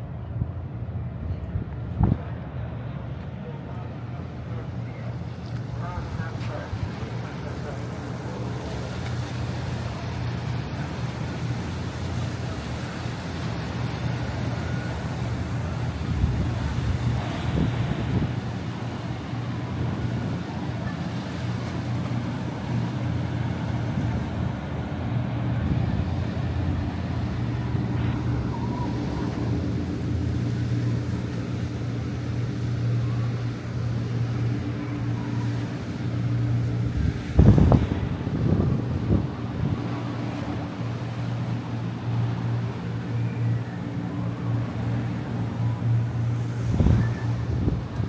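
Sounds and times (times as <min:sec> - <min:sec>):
wind buffeting microphone: 0:00.0 - 0:02.9, 0:04.5 - 0:48.0
low engine drone: 0:00.0 - 0:48.0
steady low rumble: 0:00.0 - 0:48.0.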